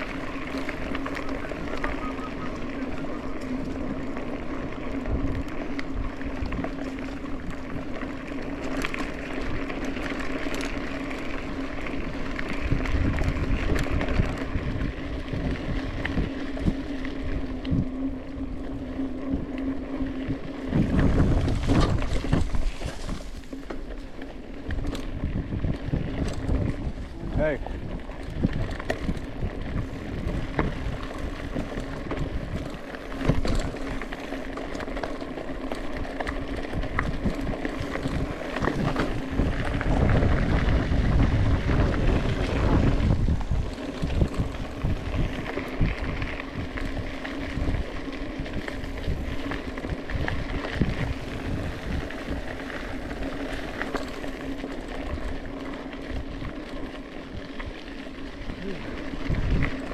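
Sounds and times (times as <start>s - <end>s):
mountain bike rattling on trail: 0.0s - 59.9s
wind on microphone: 12.5s - 18.1s, 20.2s - 23.4s, 36.6s - 53.7s, 58.4s - 59.9s.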